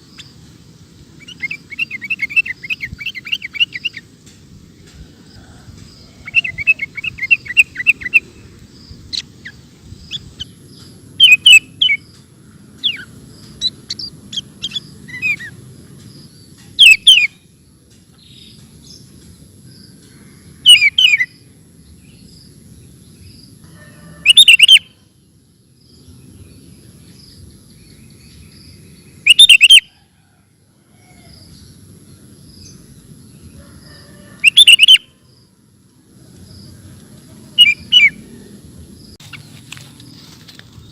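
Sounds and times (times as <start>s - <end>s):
bulbul singing: 1.2s - 5.0s, 5.7s - 19.8s, 24.3s - 29.9s, 34.4s - 35.6s, 36.4s - 39.6s.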